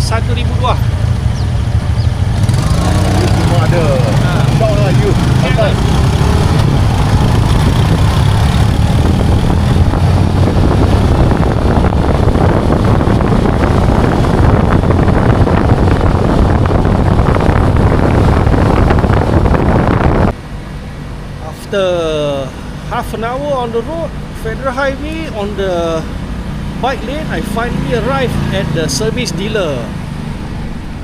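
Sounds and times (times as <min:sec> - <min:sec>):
motorcycle engine running: 0:00.0 - 0:20.4
wind buffeting microphone: 0:00.1 - 0:21.5.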